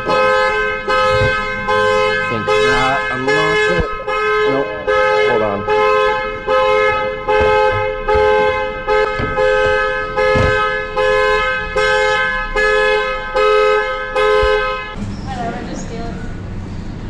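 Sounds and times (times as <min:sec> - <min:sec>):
car alarm horn honking: 0:00.0 - 0:15.0.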